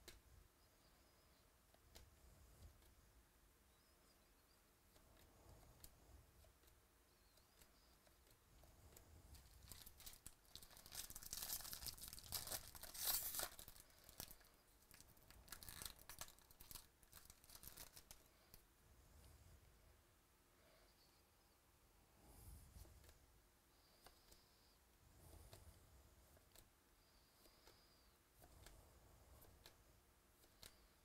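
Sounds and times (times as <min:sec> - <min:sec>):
card pack wrapper tearing: 0:09.6 - 0:14.4, 0:15.4 - 0:18.2.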